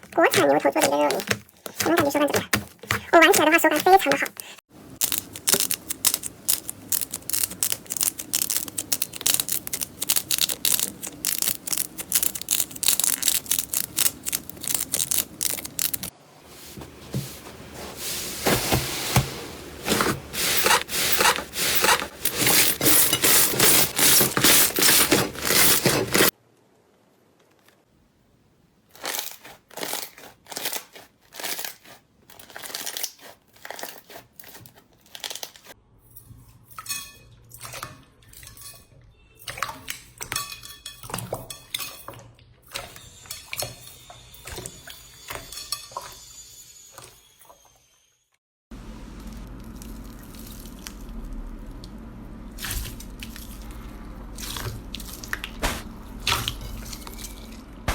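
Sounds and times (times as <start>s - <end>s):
slime crackling and popping: 5.0s - 16.1s.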